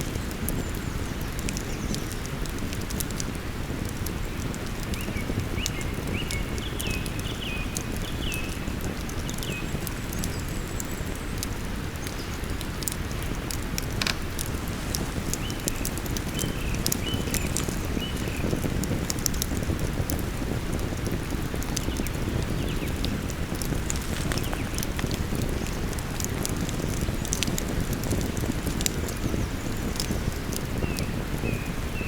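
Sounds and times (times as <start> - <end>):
campfire crackling and popping: 0.0 - 32.0
river flowing: 12.9 - 18.5
bird chirping: 14.0 - 18.6.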